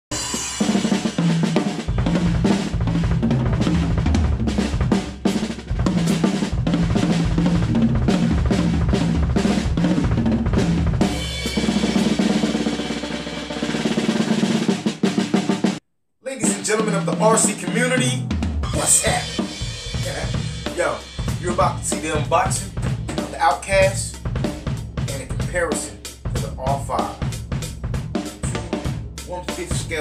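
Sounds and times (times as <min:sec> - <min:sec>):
drum kit playing: 0:00.1 - 0:30.0
deep kick drum: 0:01.9 - 0:11.4, 0:18.3 - 0:29.2.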